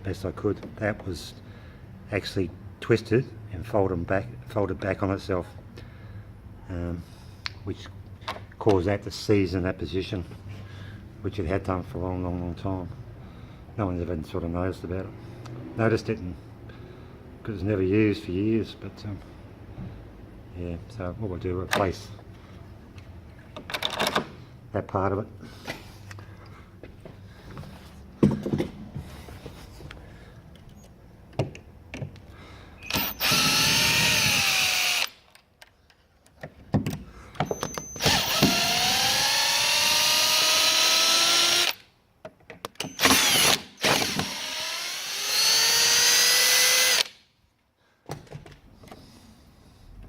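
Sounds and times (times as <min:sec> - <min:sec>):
power drill driving screws: 0:32.8 - 0:35.2, 0:37.5 - 0:41.8, 0:42.8 - 0:47.2.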